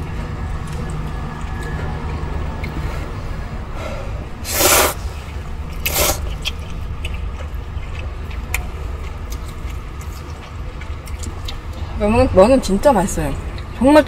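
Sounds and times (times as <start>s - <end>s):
low car hum: 0.0s - 14.0s
slurping noodles: 4.1s - 6.6s
eating clicks: 4.5s - 12.0s.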